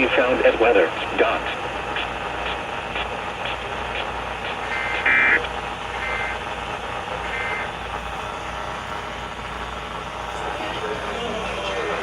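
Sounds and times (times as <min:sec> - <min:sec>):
two-pitch data bursts: 0:00.8 - 0:06.4.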